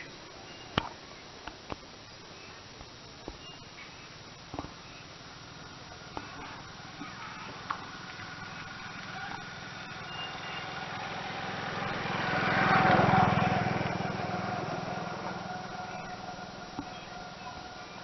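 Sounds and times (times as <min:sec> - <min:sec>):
motorcycle passing by: 0:05.4 - 0:18.0.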